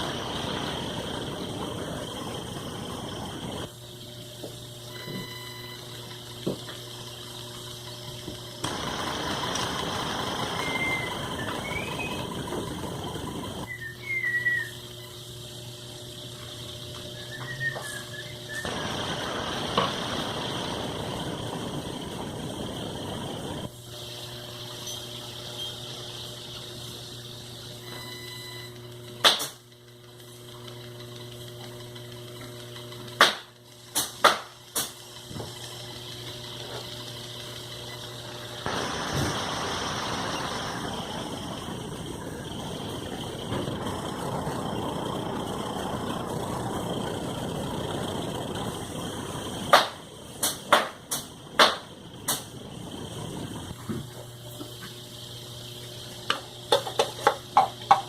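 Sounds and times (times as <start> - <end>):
electric motor humming: 0.0 - 4.9, 5.8 - 14.0, 14.6 - 27.7, 35.0 - 50.4.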